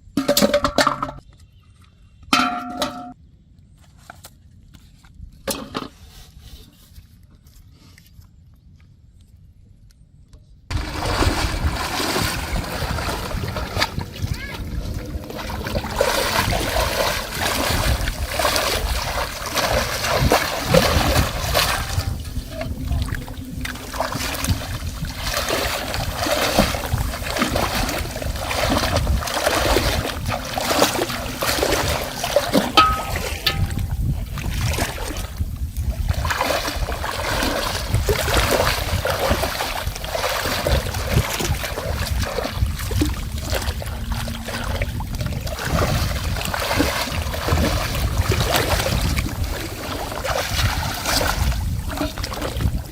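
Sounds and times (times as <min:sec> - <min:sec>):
low rumble: 0:10.7 - 0:52.6
water splashing and trickling: 0:10.7 - 0:52.9.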